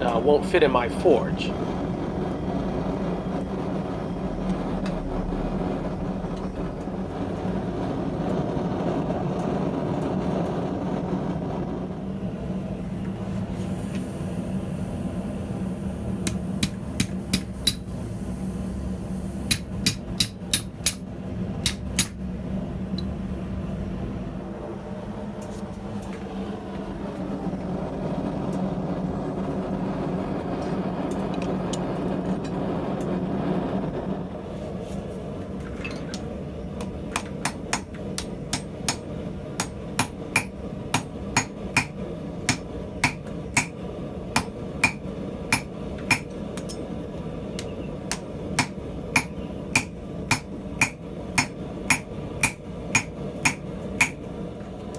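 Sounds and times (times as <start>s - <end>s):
steady low hum: 0.0s - 54.9s
hammer striking iron on anvil: 16.2s - 17.9s, 19.5s - 22.2s, 36.8s - 43.8s, 44.4s - 46.8s, 47.6s - 54.3s.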